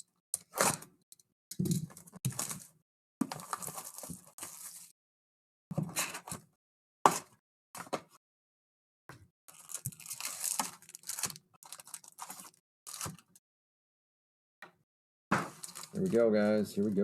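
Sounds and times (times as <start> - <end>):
plastic shrink wrap tearing: 9.5 - 13.4, 15.6 - 16.2
plastic wrap snapping: 9.5 - 13.4, 15.6 - 16.1.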